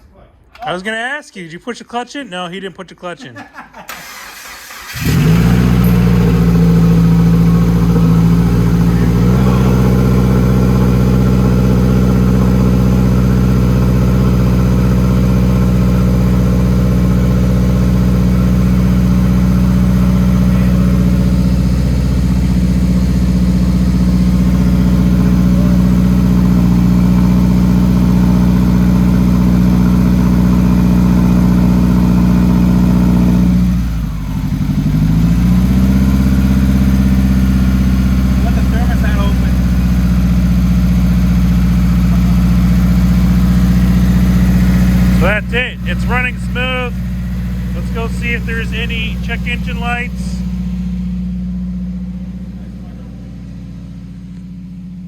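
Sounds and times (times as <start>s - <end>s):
car engine fast idle: 3.9s - 55.0s.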